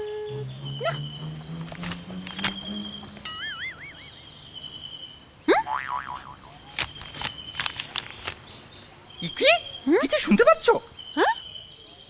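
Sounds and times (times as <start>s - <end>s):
soft low rising notes: 0.0s - 4.7s
wavering whistle-like tone: 0.0s - 4.9s
crickets chirping: 0.0s - 12.0s.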